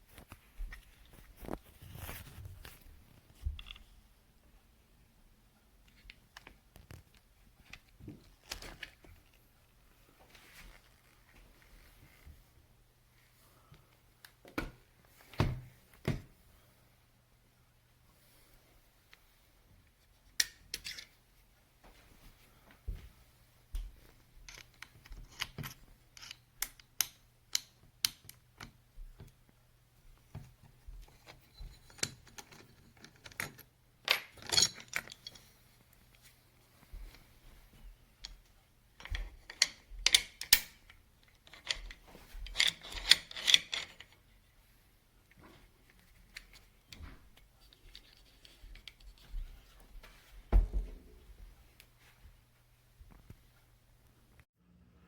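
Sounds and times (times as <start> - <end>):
small hard parts clicking: 39.0 - 44.2
low thump: 50.5 - 51.2.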